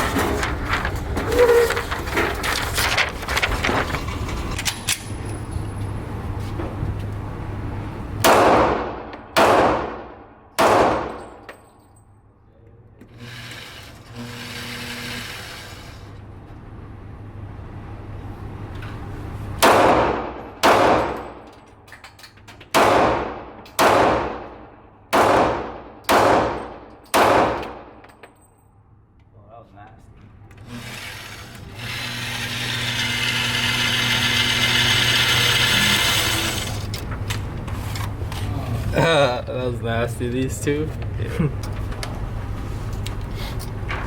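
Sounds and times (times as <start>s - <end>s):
pistol shots echoing: 8.2s - 11.2s, 19.6s - 21.2s, 22.8s - 27.9s.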